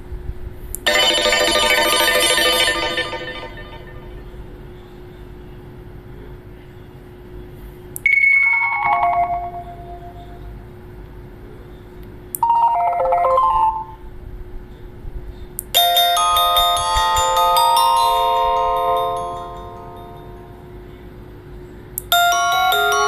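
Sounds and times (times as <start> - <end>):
faint steady hum: 0.0 - 23.0
phone alert chimes: 0.9 - 4.2, 8.1 - 10.5, 12.4 - 14.0, 15.8 - 20.7, 22.1 - 23.0
ringtone melody: 0.9 - 4.3, 8.1 - 10.5, 12.4 - 14.1, 15.8 - 20.9, 22.1 - 23.0.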